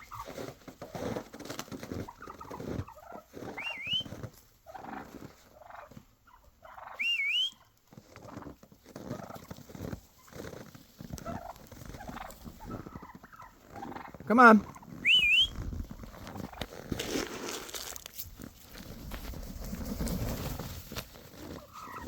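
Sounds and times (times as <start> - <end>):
turkeys calling and clucking: 0.0 - 18.0, 18.7 - 22.0
rising whistles: 3.6 - 4.1, 6.9 - 7.6, 15.0 - 15.6.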